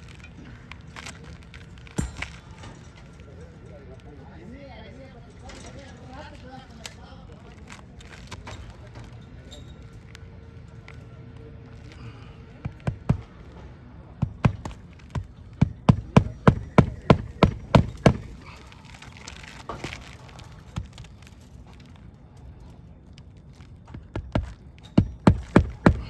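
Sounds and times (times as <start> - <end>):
hammer striking nails on roof: 12.6 - 13.6, 14.2 - 18.6, 23.9 - 26.0.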